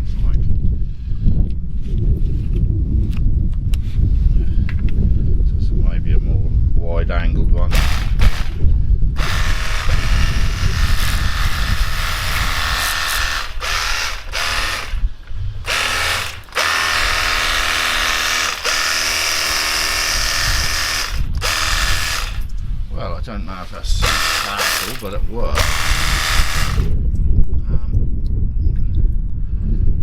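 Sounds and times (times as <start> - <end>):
pressure washer motor whining: 7.7 - 8.6, 9.2 - 15.0, 15.6 - 22.5, 23.9 - 27.0.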